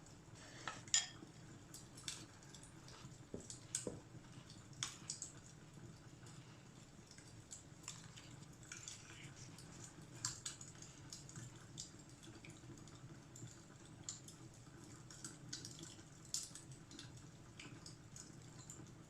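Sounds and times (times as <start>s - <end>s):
fireplace fire crackling: 1.2s - 19.0s.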